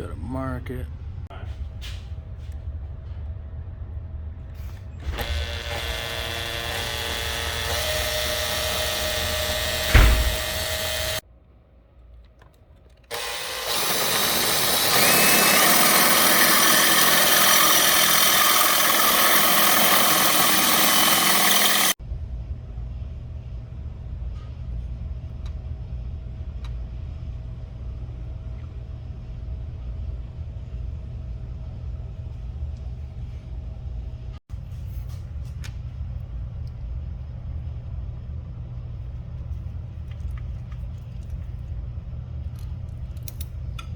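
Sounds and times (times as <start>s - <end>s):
power drill running: 5.0s - 11.2s, 13.1s - 22.0s
low steady hum: 22.0s - 43.9s.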